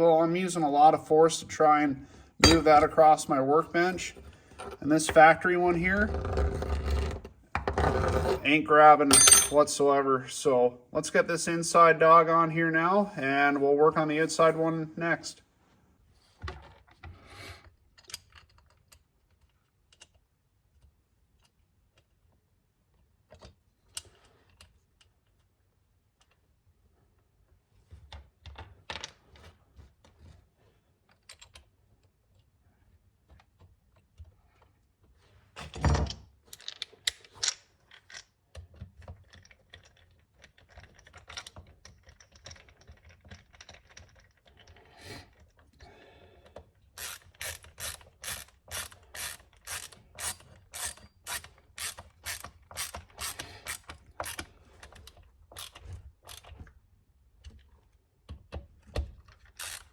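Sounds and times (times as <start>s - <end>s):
tools and parts clicking: 2.4s - 2.9s, 9.1s - 9.6s, 18.0s - 22.1s, 36.0s - 44.8s, 46.5s - 56.6s, 58.9s - 59.9s
hand ratchet clicking: 47.0s - 54.5s, 59.5s - 59.9s.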